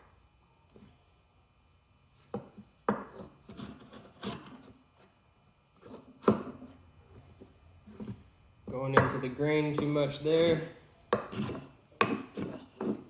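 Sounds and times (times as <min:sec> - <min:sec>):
hand plane scraping wood: 0:08.8 - 0:13.0.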